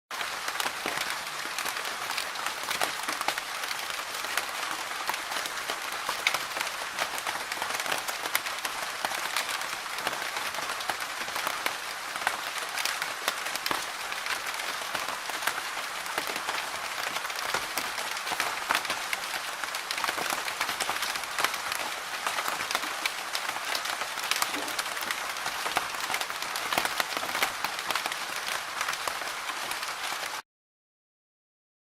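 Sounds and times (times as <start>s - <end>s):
rain on a hard surface: 0.1s - 30.4s.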